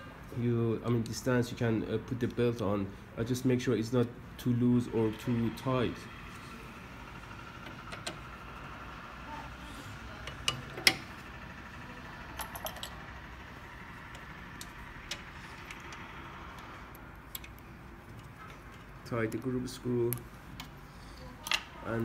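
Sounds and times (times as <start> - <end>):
steady low hum: 0.0 - 22.0
metal parts clicking and tapping: 7.6 - 8.2, 10.2 - 11.1, 12.3 - 13.1, 14.1 - 22.0.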